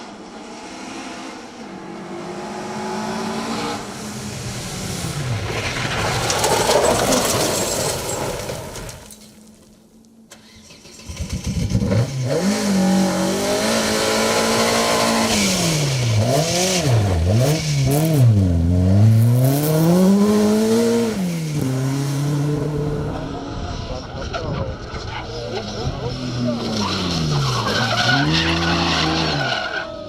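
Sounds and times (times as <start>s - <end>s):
rally car engine revving: 11.0s - 30.0s.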